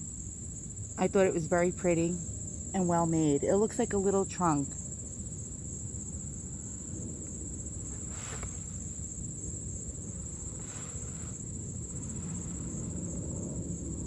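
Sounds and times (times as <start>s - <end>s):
low background hum: 0.0s - 14.0s
faint rustles: 6.6s - 13.7s.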